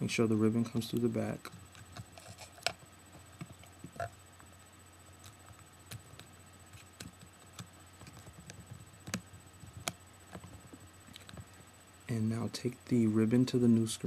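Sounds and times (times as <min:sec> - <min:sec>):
small clicks and taps of plastic parts: 0:07.0 - 0:11.5.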